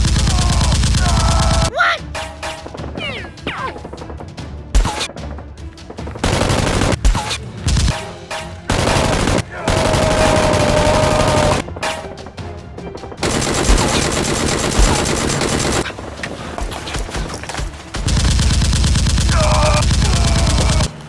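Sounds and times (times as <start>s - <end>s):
automatic gunfire: 6.2s - 7.1s, 8.7s - 11.6s, 13.2s - 15.9s, 18.0s - 20.9s.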